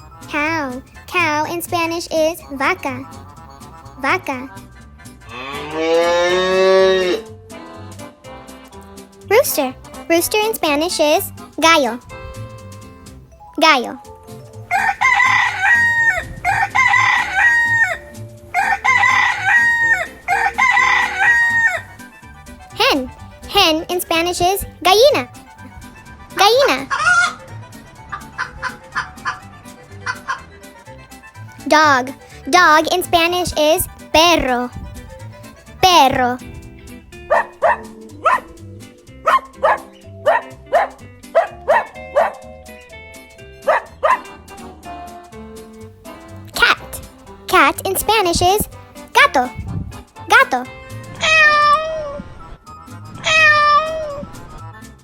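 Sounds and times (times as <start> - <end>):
light background music: 0.0 - 55.0
rooster crowing: 14.7 - 21.9
dog barking: 37.2 - 38.6, 39.2 - 42.5, 43.6 - 44.4.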